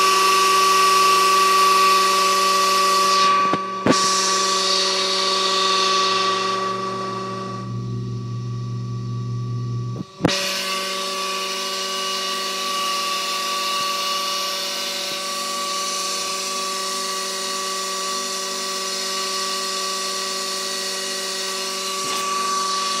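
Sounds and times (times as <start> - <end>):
pump motor whining and grinding: 0.0 - 8.8, 9.8 - 23.0.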